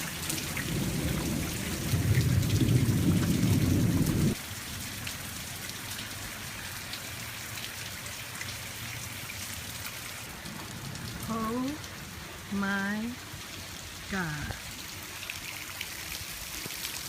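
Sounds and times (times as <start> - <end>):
heavy rain falling: 0.0 - 17.0
deep thunder rumble: 0.4 - 4.4.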